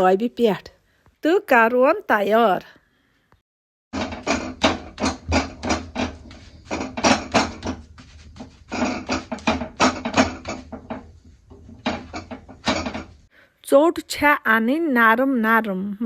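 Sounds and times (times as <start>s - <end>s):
rolling pin rolling dough: 4.0s - 13.3s.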